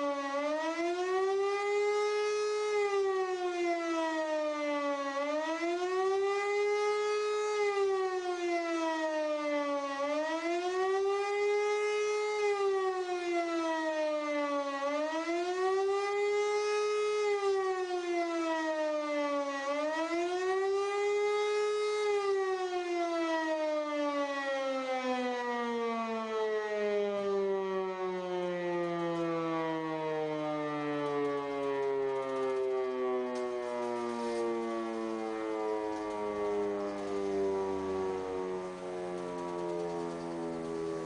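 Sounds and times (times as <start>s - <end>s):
civil defence siren wailing: 0.0s - 41.0s.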